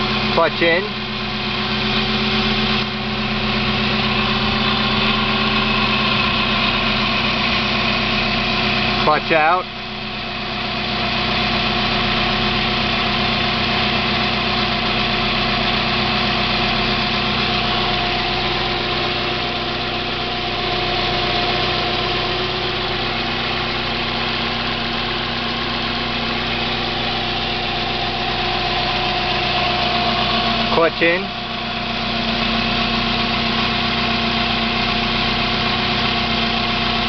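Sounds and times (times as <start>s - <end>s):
car engine idling: 0.0s - 37.0s.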